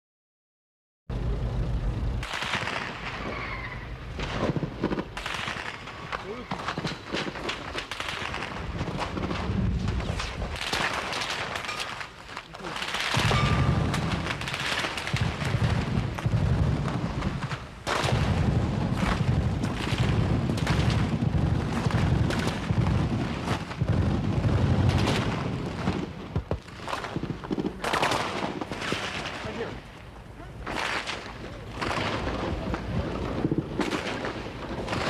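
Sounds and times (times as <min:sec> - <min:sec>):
heavy low rumble: 0:01.1 - 0:05.2, 0:13.2 - 0:14.5
gunshots: 0:02.2 - 0:29.9, 0:30.6 - 0:35.0.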